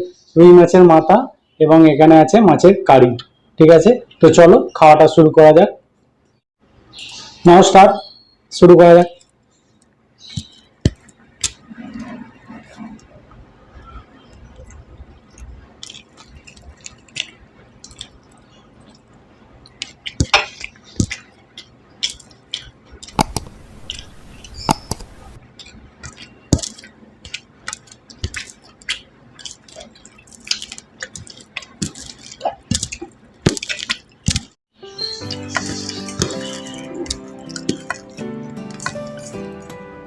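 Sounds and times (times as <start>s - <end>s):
wet squishing of food: 10.3s - 34.6s, 35.3s - 39.7s.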